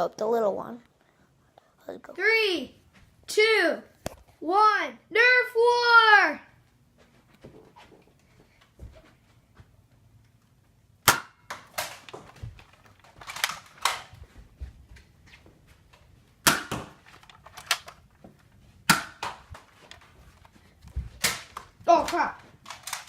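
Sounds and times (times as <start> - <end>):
toy blaster shots: 16.5 - 17.0.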